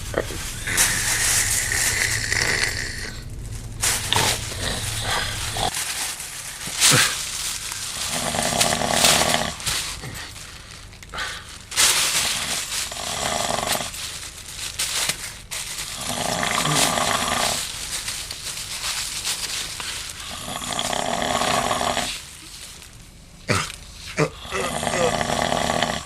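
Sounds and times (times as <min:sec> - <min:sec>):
man snoring: 0:00.0 - 0:03.3, 0:04.1 - 0:05.7, 0:08.0 - 0:10.3, 0:12.3 - 0:13.9, 0:15.9 - 0:17.7, 0:20.2 - 0:22.2, 0:23.5 - 0:26.0.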